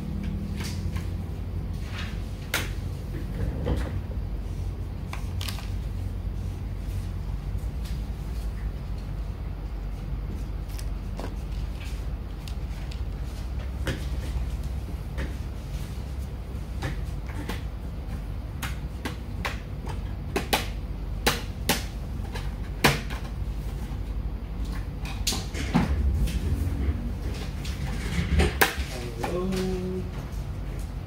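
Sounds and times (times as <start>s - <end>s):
low hum: 23.8s - 31.0s.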